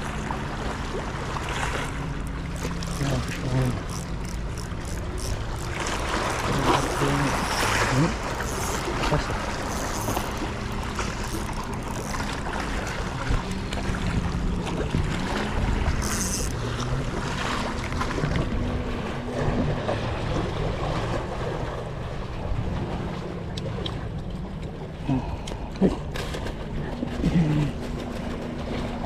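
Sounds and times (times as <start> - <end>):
low wavering hum: 0.0 - 29.0
sea water: 0.0 - 29.0.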